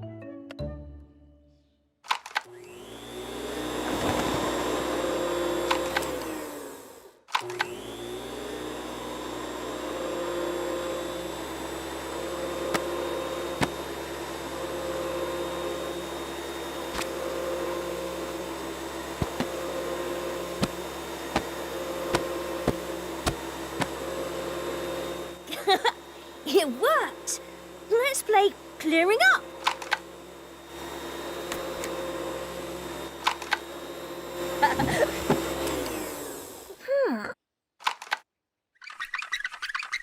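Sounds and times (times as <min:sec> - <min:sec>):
machine motor whirring: 0:18.8 - 0:26.6, 0:27.2 - 0:36.8
scattered clicks: 0:37.8 - 0:38.3.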